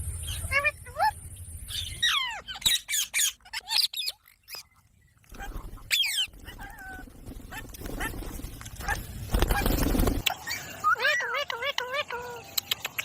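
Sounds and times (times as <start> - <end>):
parakeet screeching: 1.7 - 4.2.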